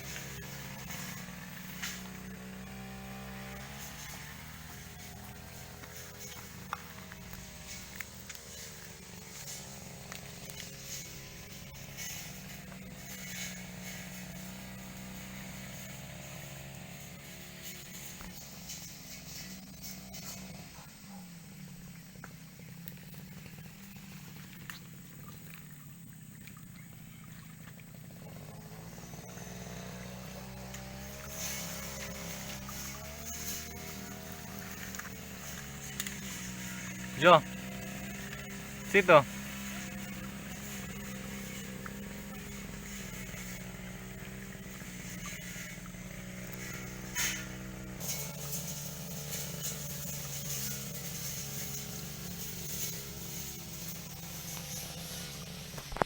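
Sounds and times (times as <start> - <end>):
bulldozer motor humming: 0.0 - 56.0
sharp scrape: 46.6 - 56.0.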